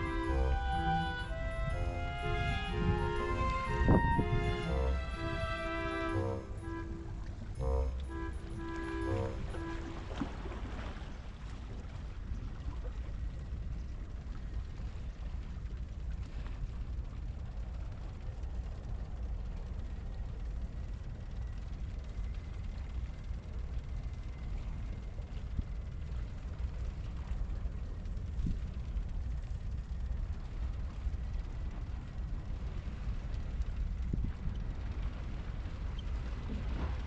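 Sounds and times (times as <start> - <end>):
wind buffeting microphone: 0.0 - 8.2, 24.5 - 37.0.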